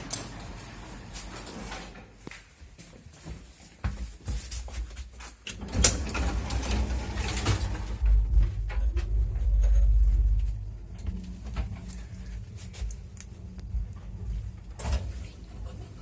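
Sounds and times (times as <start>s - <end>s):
lift doors and mechanism clatter: 0.0s - 2.2s, 5.4s - 12.3s
low rumble: 6.1s - 16.0s.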